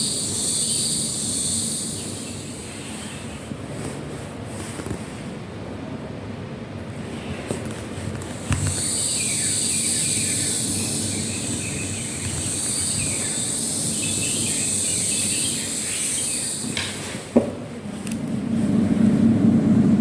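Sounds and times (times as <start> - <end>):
high insect-like drone: 0.0 - 3.4, 8.6 - 17.2
falling bird-like chirps: 8.7 - 17.2.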